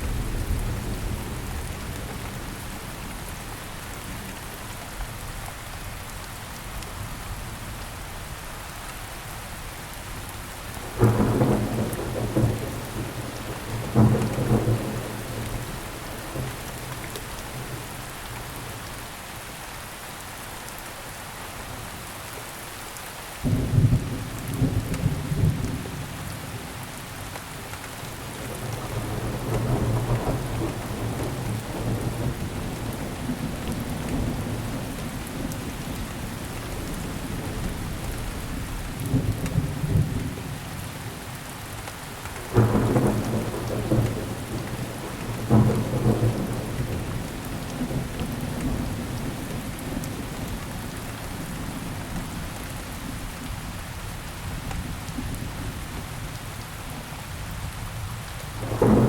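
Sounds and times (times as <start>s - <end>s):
steady rain: 0.0s - 59.0s
thunderclaps: 11.0s - 17.8s, 28.2s - 38.0s, 42.4s - 50.5s, 58.6s - 59.0s
low rumbling thunder: 11.0s - 17.9s, 28.2s - 40.6s, 42.4s - 50.6s, 58.6s - 59.0s.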